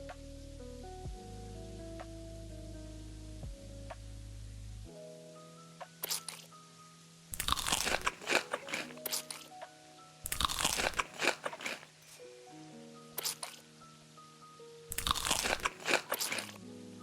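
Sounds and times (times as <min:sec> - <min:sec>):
soft background music: 0:00.0 - 0:17.0
crisp food crunching: 0:06.0 - 0:06.5, 0:07.4 - 0:09.5, 0:10.3 - 0:12.0, 0:13.2 - 0:13.6, 0:14.9 - 0:16.6.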